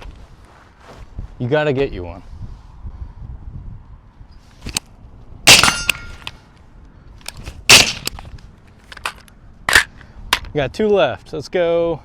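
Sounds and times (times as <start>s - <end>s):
suppressed rifle shots: 5.5s - 6.3s, 7.7s - 8.2s.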